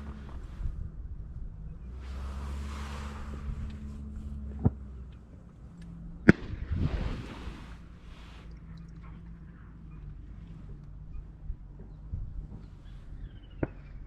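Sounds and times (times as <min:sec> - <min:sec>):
steady low rumble: 0:00.0 - 0:14.0
loud sharp crack: 0:06.2 - 0:07.9.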